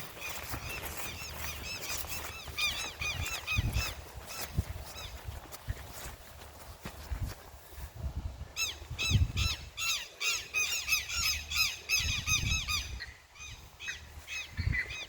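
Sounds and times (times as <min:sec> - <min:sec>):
flock of birds squawking: 0:00.0 - 0:05.2.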